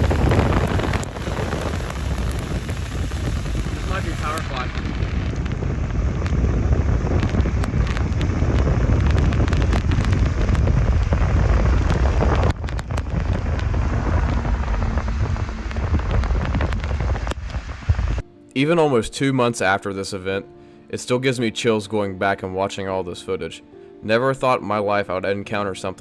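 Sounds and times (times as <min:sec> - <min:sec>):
sharp clicks: 0:00.0 - 0:05.6
rain hissing: 0:00.0 - 0:18.2
wind buffeting microphone: 0:00.0 - 0:18.2.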